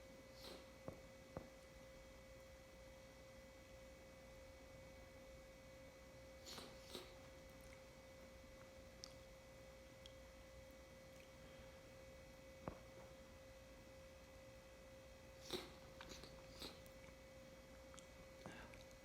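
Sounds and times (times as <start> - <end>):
faint high hum: 0.0 - 19.0.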